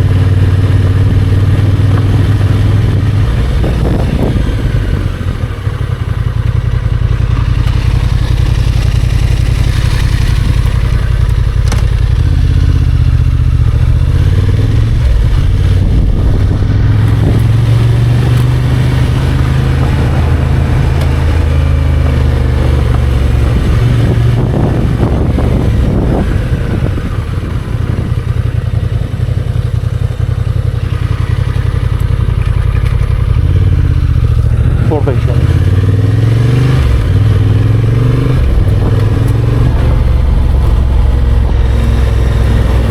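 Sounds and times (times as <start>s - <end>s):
motorcycle engine running: 0.0s - 42.9s.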